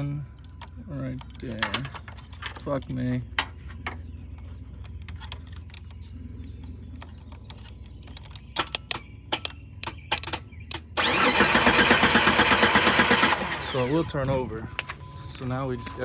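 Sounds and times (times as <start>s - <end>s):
wire clicks in socket: 7.0s - 11.0s
starter cranking engine: 9.8s - 16.0s.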